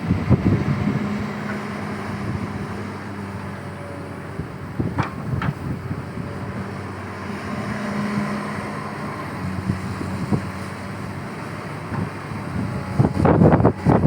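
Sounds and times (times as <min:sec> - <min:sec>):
excavator diesel engine running: 0:00.0 - 0:14.0.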